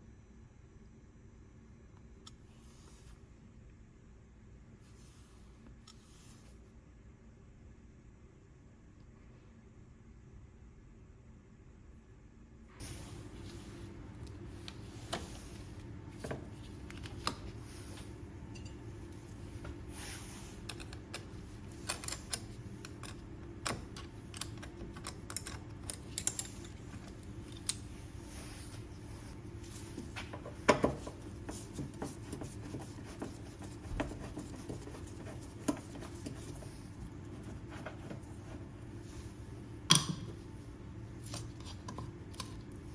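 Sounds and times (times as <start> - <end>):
steady low hum: 0.0 - 42.9.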